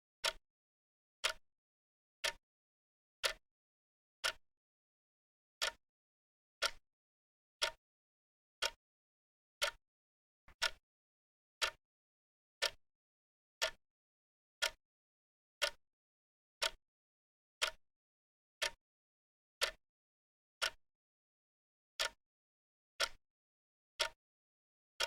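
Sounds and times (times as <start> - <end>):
clock ticking: 7.6 - 7.8, 10.6 - 10.8.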